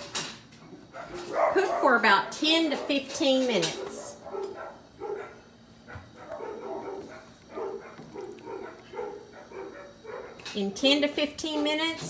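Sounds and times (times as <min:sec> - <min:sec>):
small dog yapping: 0:03.8 - 0:10.4.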